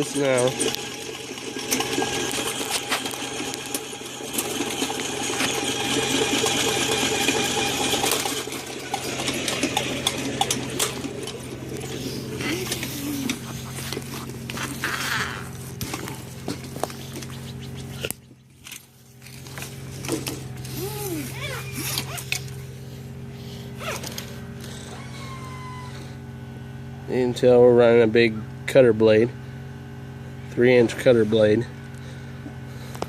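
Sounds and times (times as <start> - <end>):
spinning cable rattling in pipe: 0.0 - 22.6
drain cleaning machine motor humming: 0.0 - 27.2.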